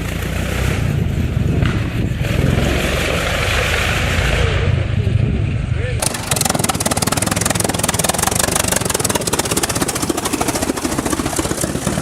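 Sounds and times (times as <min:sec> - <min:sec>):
large engine running loud: 0:06.0 - 0:12.0.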